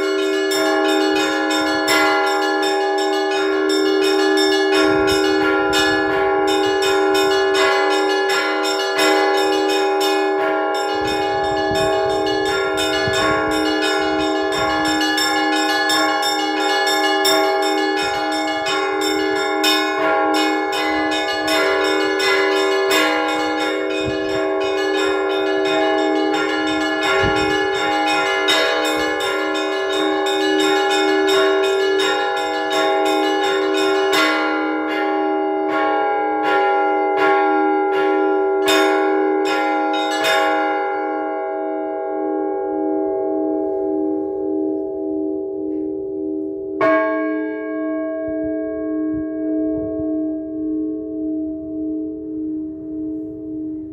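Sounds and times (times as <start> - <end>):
large bells humming: 0.0 - 53.9
small church bells rapid strokes: 0.0 - 53.9.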